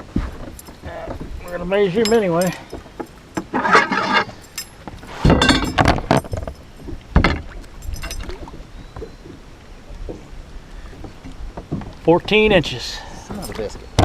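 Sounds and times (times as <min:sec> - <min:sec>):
clattering knocks on boat: 0:05.2 - 0:07.5, 0:11.0 - 0:12.6.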